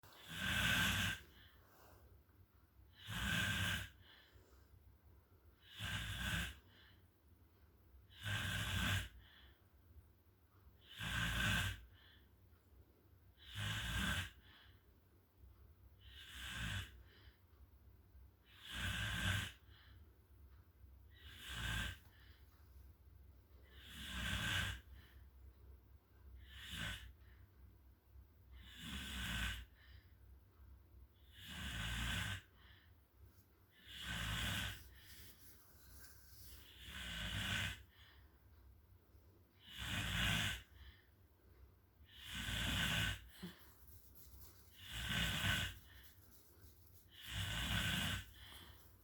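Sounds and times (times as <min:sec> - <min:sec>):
person snoring: 0:00.2 - 0:01.4, 0:03.0 - 0:04.0, 0:05.6 - 0:06.6, 0:21.2 - 0:22.0, 0:23.7 - 0:24.9, 0:33.8 - 0:35.0, 0:36.6 - 0:37.9, 0:39.6 - 0:40.8, 0:42.1 - 0:46.1, 0:47.0 - 0:48.9.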